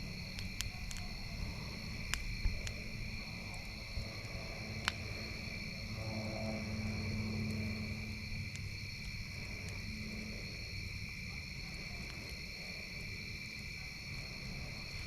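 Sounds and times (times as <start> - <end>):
campfire crackling: 0.0 - 15.0
night insects chirping: 0.0 - 15.0
low drone: 3.0 - 10.9.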